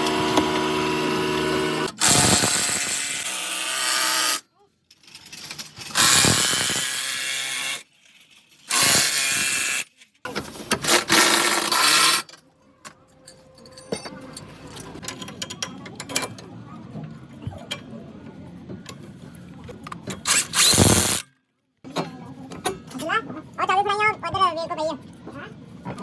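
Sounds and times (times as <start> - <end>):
power tool bursts: 0.0 - 4.4, 5.9 - 7.8, 8.7 - 9.8, 20.3 - 21.3
hand tools clicking and clanking: 10.3 - 16.4.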